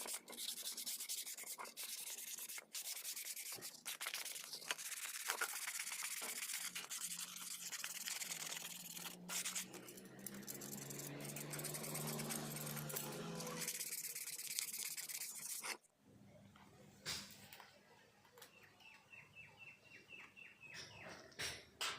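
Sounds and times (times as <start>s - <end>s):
abrasive scrubbing on rusty metal: 0.0s - 15.8s.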